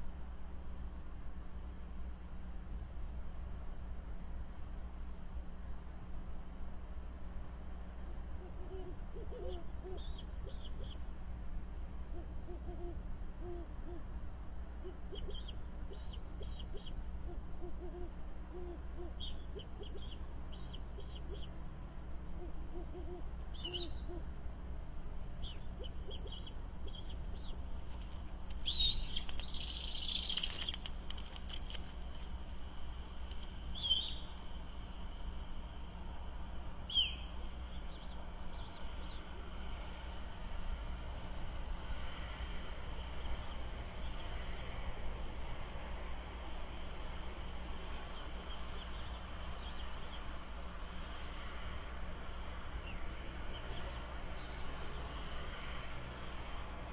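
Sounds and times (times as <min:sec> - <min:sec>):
owl hooting: 0:08.3 - 0:11.0, 0:12.1 - 0:14.1, 0:14.8 - 0:21.6, 0:22.3 - 0:24.4, 0:25.4 - 0:27.6, 0:33.7 - 0:34.4, 0:36.8 - 0:39.5.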